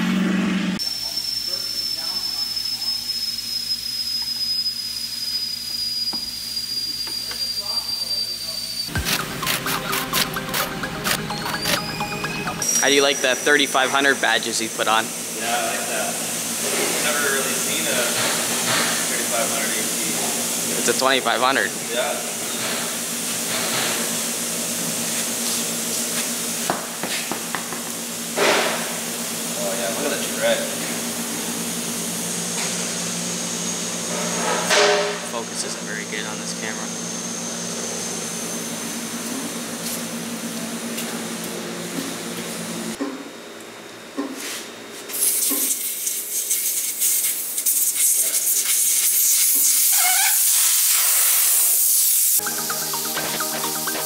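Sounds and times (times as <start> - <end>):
brief squealing tone: 0.9 - 9.0
compressed air hissing: 45.1 - 52.4.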